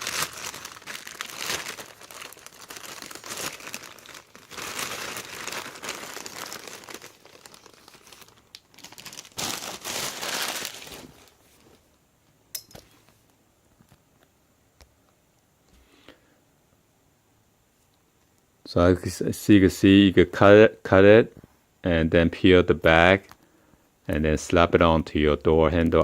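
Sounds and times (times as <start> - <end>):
plastic packaging crinkling: 0.0 - 11.8.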